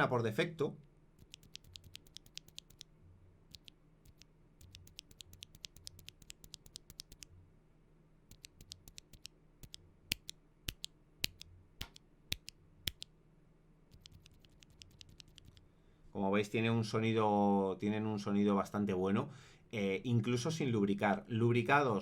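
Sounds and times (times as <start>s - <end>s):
mechanical keyboard switch clicking: 1.2s - 2.8s, 3.5s - 7.2s, 8.3s - 13.0s, 14.0s - 15.6s.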